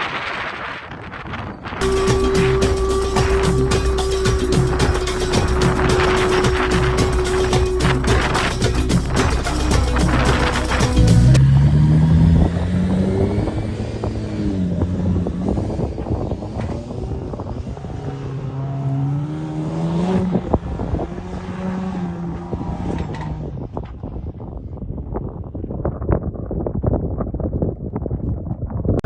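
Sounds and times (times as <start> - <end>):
vehicle engine revving: 1.8 - 23.7.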